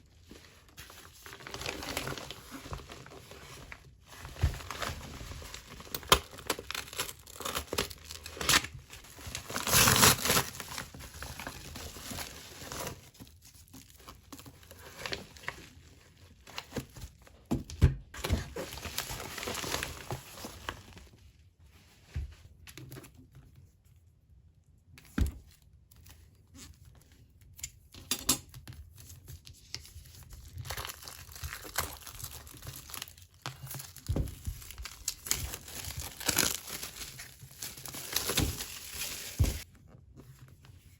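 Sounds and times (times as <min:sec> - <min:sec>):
packaging crinkling and tearing: 0:00.2 - 0:17.3, 0:18.2 - 0:21.1, 0:29.2 - 0:39.7.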